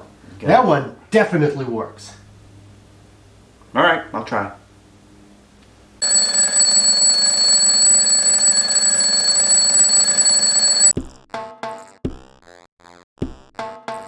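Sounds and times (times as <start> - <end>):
alarm clock ringing: 6.0 - 10.9.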